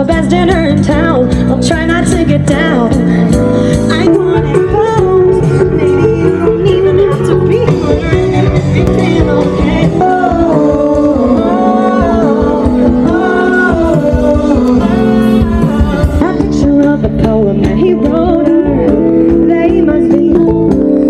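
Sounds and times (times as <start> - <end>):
band playing a song: 0.0 - 21.0
guitar accompaniment: 0.0 - 21.0
person singing: 0.0 - 21.0.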